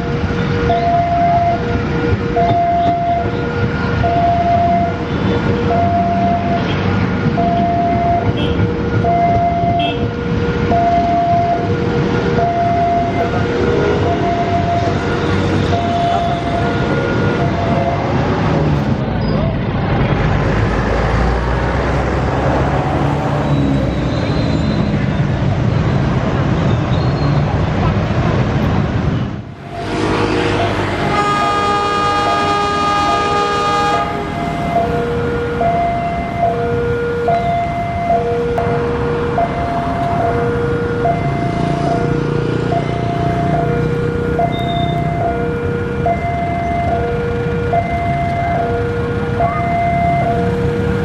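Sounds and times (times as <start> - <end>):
train wheels on rails: 0.0 - 36.6, 37.3 - 49.0
locomotive horn blast: 7.6 - 8.8, 9.6 - 10.2, 11.1 - 18.2, 29.5 - 39.3.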